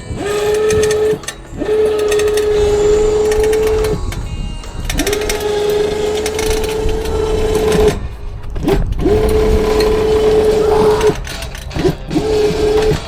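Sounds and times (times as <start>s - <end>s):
electric winch motor whining: 0.0s - 13.0s.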